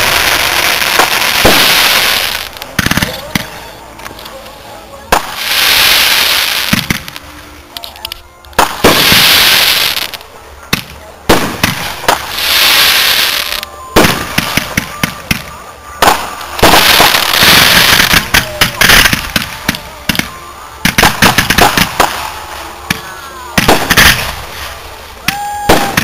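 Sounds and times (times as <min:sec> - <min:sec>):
crackling hiss: 0:00.0 - 0:26.0.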